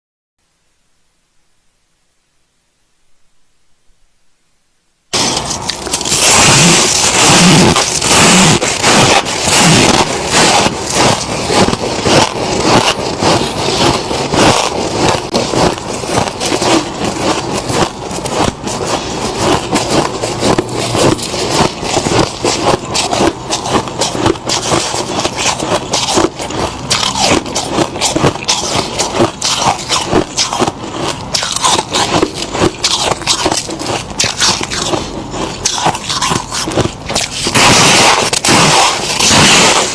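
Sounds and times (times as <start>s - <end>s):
frost crunching and scraping: 5.1s - 39.9s.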